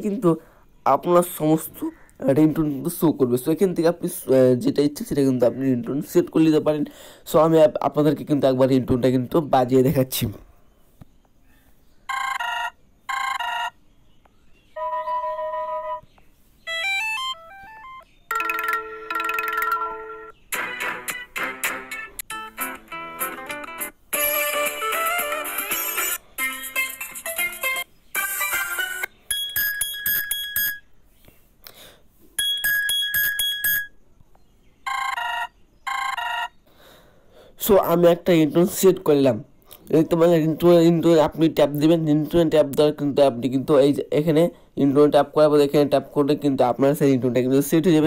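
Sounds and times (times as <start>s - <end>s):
phone ringing bursts: 12.1s - 13.8s, 14.8s - 16.0s, 16.7s - 20.3s, 32.4s - 34.0s, 34.9s - 36.6s
smartphone ringtones: 12.1s - 13.8s, 14.8s - 16.1s, 16.7s - 20.3s, 28.2s - 30.9s, 32.4s - 34.0s, 34.9s - 36.6s
beeping notes stepping up and down: 14.8s - 16.1s, 16.7s - 26.2s
held electronic chord: 16.7s - 26.6s.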